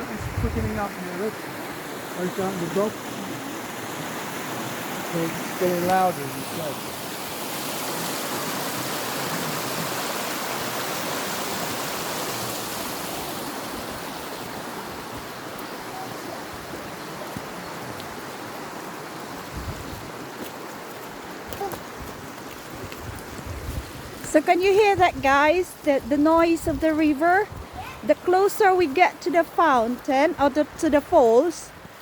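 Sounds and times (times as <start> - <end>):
river water rushing over rocks: 0.0 - 24.4.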